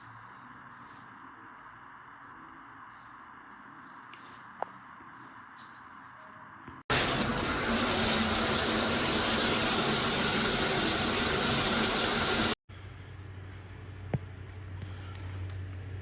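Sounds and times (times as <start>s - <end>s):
shower head spraying water: 6.9s - 12.6s.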